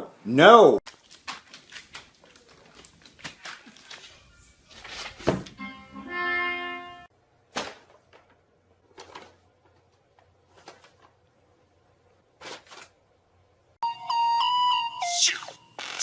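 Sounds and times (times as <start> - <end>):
music note: 5.6 - 7.1, 13.8 - 15.2.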